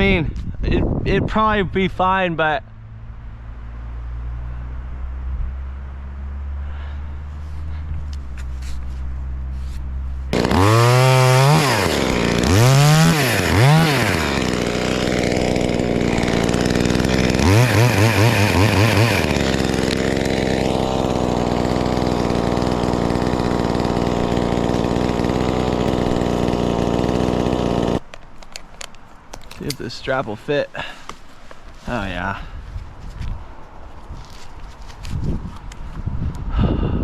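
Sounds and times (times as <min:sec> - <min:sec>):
chainsaw revving: 0:10.3 - 0:28.0.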